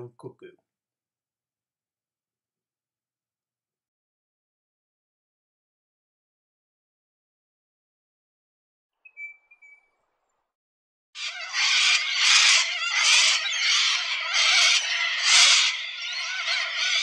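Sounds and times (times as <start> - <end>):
corellas screeching: 11.2 - 17.0.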